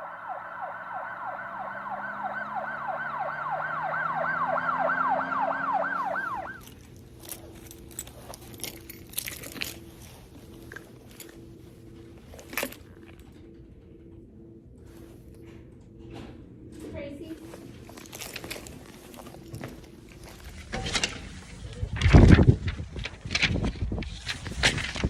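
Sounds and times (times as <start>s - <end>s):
yelp siren: 0.0s - 6.7s.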